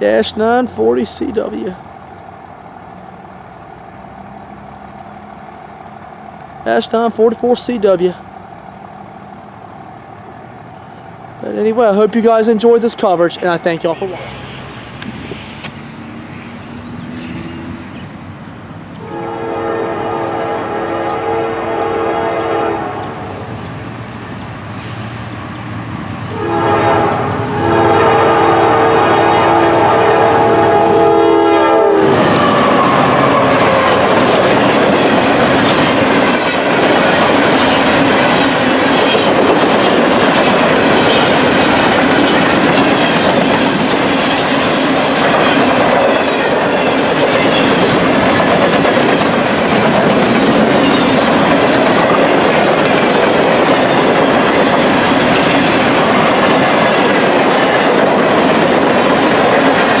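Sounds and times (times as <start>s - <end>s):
train wheels rumbling on rail: 0.0s - 60.0s
locomotive horn: 19.0s - 23.4s, 26.3s - 34.5s.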